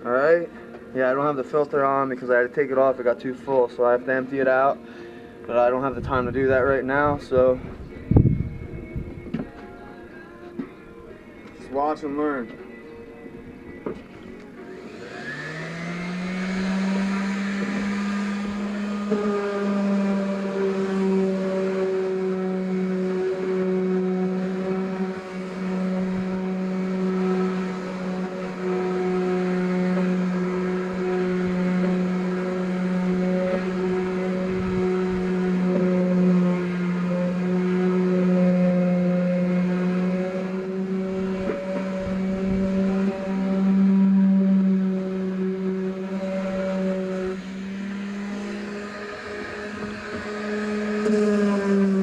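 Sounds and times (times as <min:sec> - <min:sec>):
higher tone: 0:05.4 - 0:52.0
orbital sander motor hum: 0:14.4 - 0:52.0.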